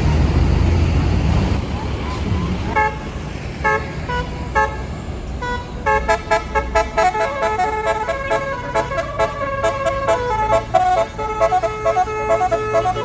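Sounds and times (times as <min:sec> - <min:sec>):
bus engine rumbling: 0:00.0 - 0:13.0
musical bus horn tune: 0:02.8 - 0:13.0.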